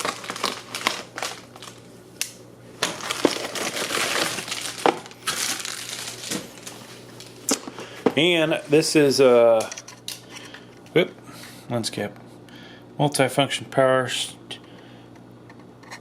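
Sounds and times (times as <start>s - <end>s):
cardboard packaging rustling: 0.0s - 1.8s, 2.8s - 7.4s.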